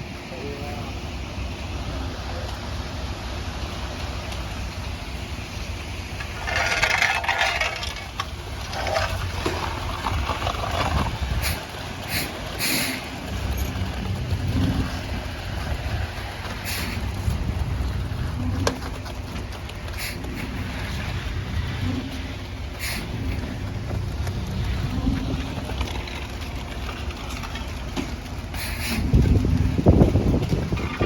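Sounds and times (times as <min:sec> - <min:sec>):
concrete mixer truck engine rumble: 0:00.0 - 0:31.0
rushing hiss: 0:11.4 - 0:13.1.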